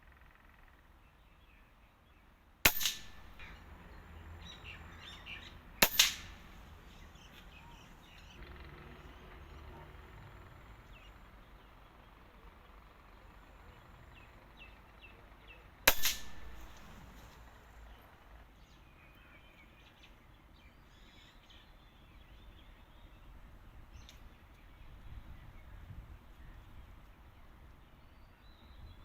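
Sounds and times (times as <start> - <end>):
air rifle shot: 2.7 - 3.6, 5.8 - 6.7, 15.9 - 17.0.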